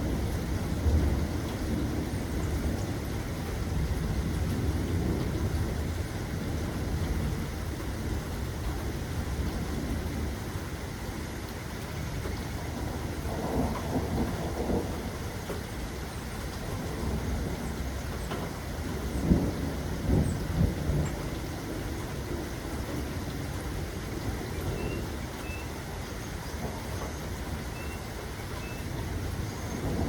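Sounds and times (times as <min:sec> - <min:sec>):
rolling thunder: 0:00.0 - 0:10.4, 0:12.0 - 0:15.7, 0:16.6 - 0:25.2, 0:28.8 - 0:30.0
steady rain: 0:00.0 - 0:30.0.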